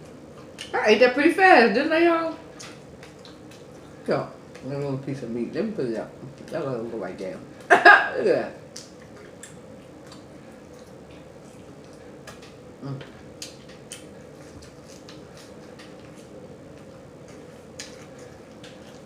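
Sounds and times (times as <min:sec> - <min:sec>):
person chewing food: 0:02.6 - 0:04.8, 0:08.7 - 0:19.0.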